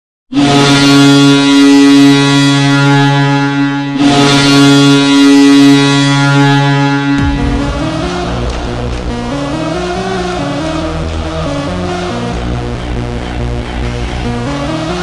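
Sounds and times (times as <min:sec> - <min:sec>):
goal horn blasting: 0:00.4 - 0:08.9.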